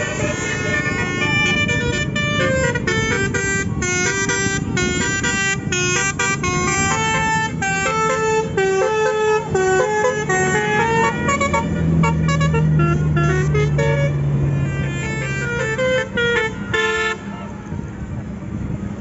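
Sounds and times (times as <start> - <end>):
musical bus horn playing tune: 0.0 - 17.5
low engine hum: 0.0 - 19.0.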